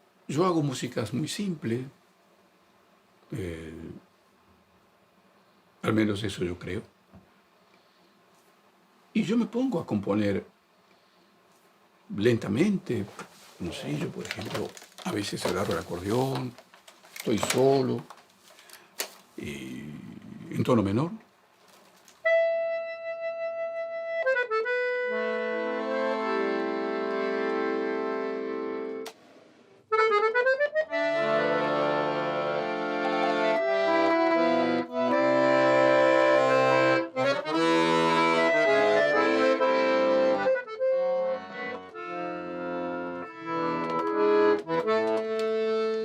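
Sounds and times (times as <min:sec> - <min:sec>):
accordion playing: 0:22.2 - 0:29.2, 0:29.9 - 0:46.0.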